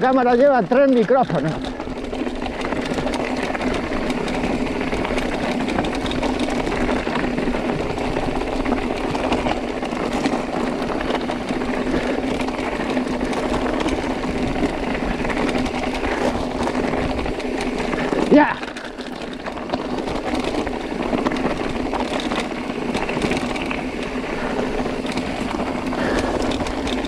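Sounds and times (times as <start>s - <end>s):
bike tyres rattling over stones: 0.0s - 27.0s.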